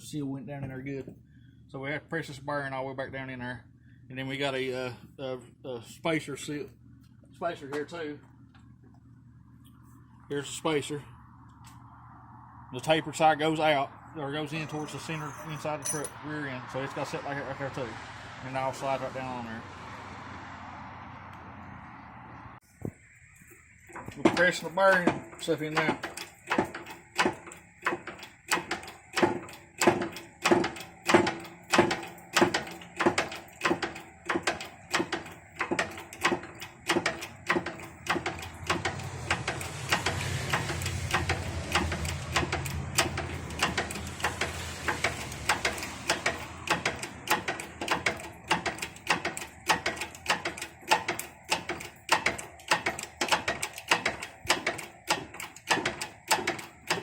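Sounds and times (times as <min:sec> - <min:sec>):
low hum: 0:06.7 - 0:18.4
hydraulic jack metallic clicks: 0:24.0 - 0:57.0.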